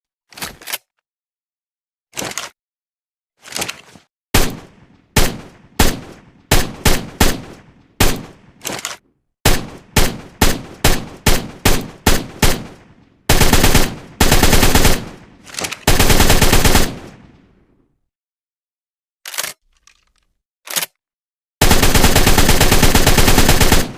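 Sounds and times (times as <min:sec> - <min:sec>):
automatic gunfire bursts: 0:05.2 - 0:08.4, 0:09.5 - 0:15.2, 0:15.8 - 0:17.2, 0:21.6 - 0:23.9.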